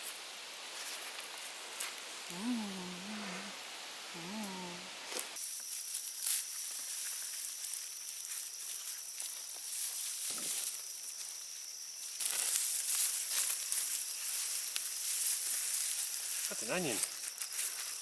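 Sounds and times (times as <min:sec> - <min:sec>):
rustling of plants being pulled: 0:04.2 - 0:18.0.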